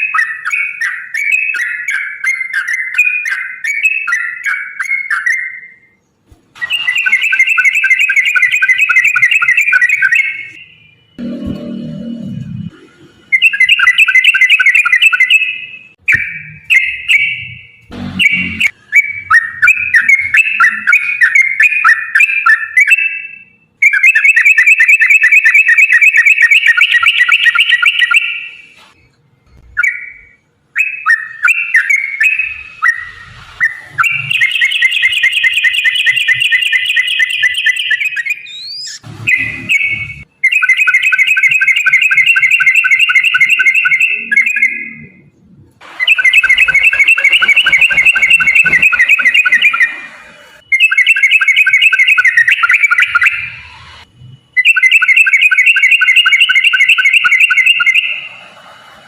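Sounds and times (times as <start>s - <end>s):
bulbul singing rolling song: 0.0s - 58.5s.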